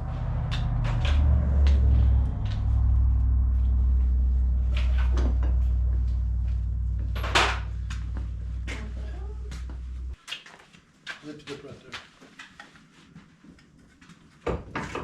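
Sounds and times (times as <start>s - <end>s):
low machine hum: 0.0s - 10.2s.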